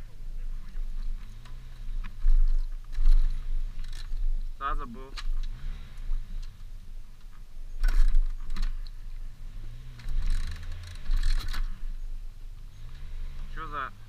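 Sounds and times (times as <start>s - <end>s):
pit bike engine revving: 0.6s - 6.8s, 7.7s - 14.0s
bike knocks and rattles: 7.2s - 8.9s.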